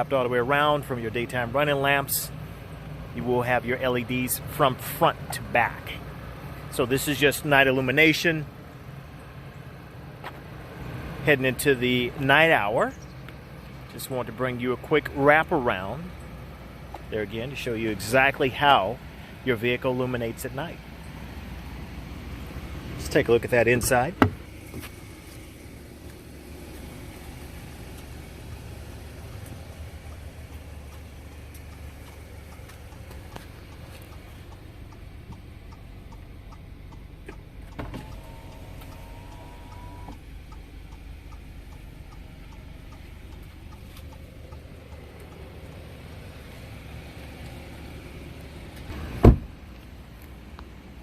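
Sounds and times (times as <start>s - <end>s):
car engine idling: 0.0s - 51.0s
loud thump: 49.2s - 49.6s.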